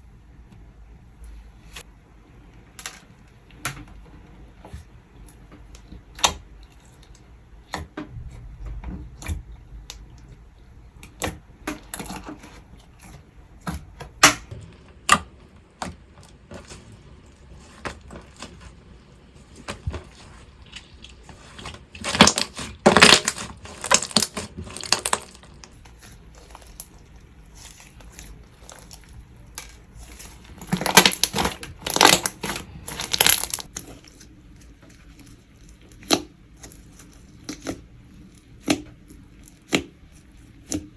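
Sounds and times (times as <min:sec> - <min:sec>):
slime squished by hand: 0:15.0 - 0:25.8, 0:29.9 - 0:33.8.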